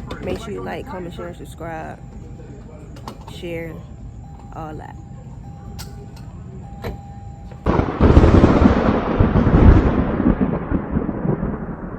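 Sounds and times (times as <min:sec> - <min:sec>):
thunder-like rumble: 0:07.6 - 0:11.9.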